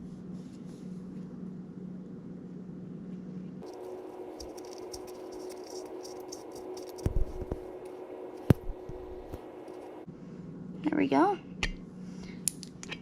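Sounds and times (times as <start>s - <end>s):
valve tool scratching and rattling: 3.6s - 9.9s.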